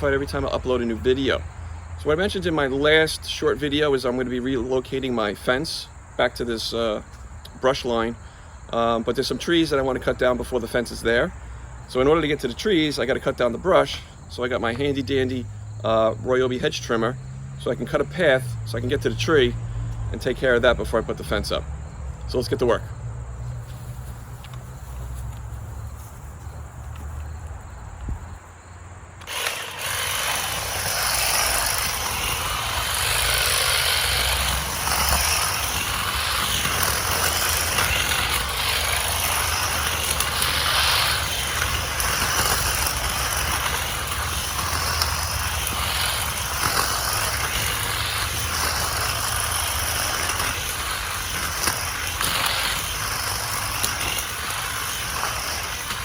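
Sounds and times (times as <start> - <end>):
hedge trimmer cutting brush: 14.7 - 28.4, 29.0 - 56.0.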